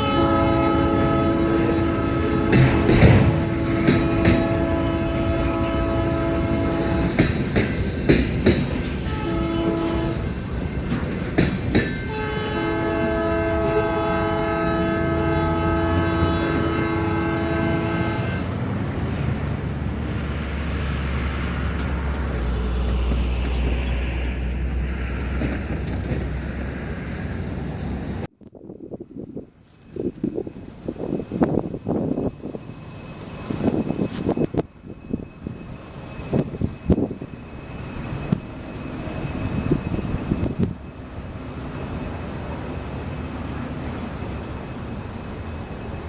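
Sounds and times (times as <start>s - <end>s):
locomotive air horn blasts: 0.0s - 7.6s, 8.8s - 18.7s
diesel train rumble: 0.0s - 46.0s
train wheels clicking over rails: 0.3s - 14.2s.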